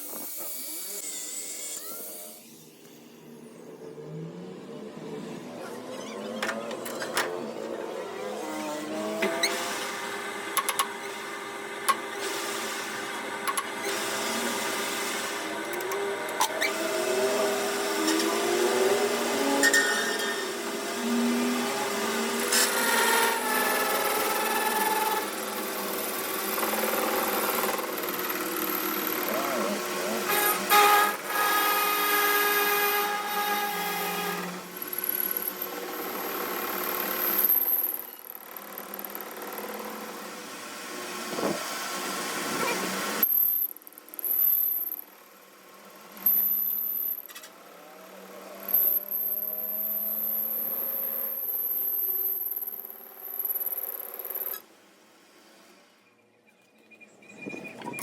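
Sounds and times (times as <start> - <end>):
power tool whining: 0.0 - 3.8, 8.2 - 45.0
small machine running: 0.0 - 4.3, 7.5 - 54.7.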